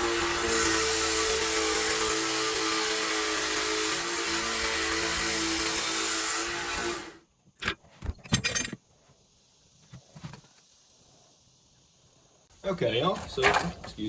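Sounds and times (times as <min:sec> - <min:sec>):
power grinder grinding metal: 0:00.0 - 0:07.2
metal clinks and knocks: 0:07.6 - 0:08.8.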